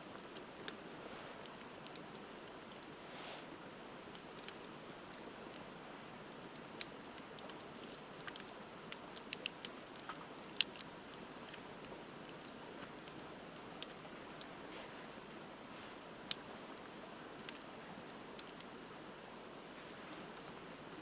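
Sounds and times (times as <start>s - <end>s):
wood fire crackling and popping: 16.0s - 18.8s.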